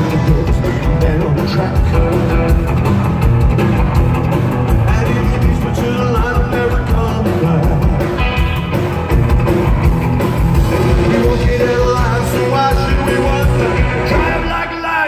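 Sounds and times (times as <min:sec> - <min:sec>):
person singing: 0:00.0 - 0:02.5, 0:04.8 - 0:08.4, 0:10.9 - 0:15.0
drums: 0:00.0 - 0:15.0
electric guitar: 0:00.0 - 0:15.0
rockabilly band playing live: 0:00.0 - 0:15.0.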